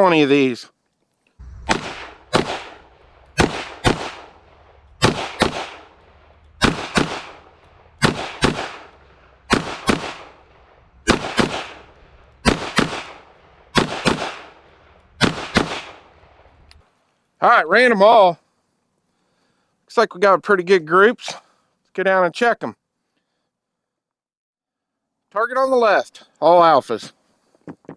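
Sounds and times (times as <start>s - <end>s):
pistol shots with echo: 1.4s - 16.4s.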